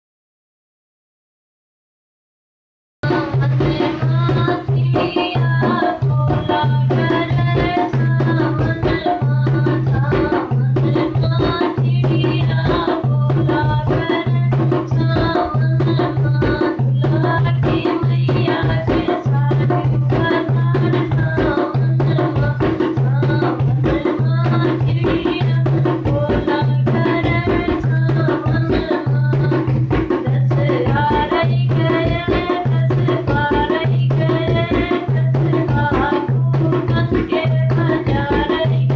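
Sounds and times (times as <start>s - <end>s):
hand drum rhythm: 3.0s - 38.9s.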